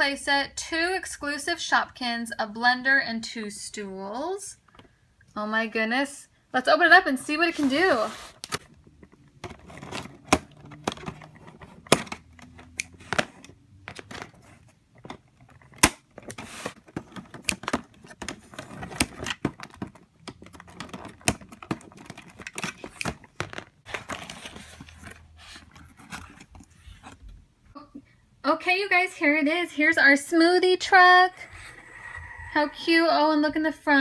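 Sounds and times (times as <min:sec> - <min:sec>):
cardboard and plastic clicks: 0:15.0 - 0:27.2.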